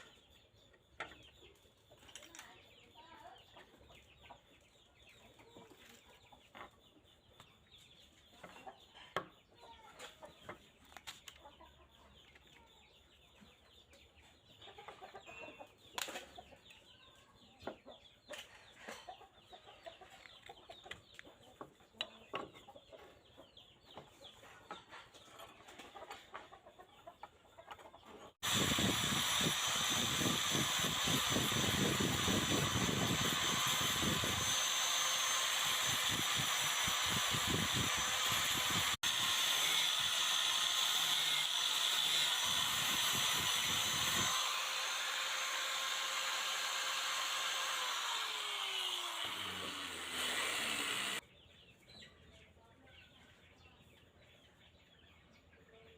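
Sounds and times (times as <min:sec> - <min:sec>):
chickens clucking: 0:00.0 - 0:28.9, 0:51.2 - 0:55.9.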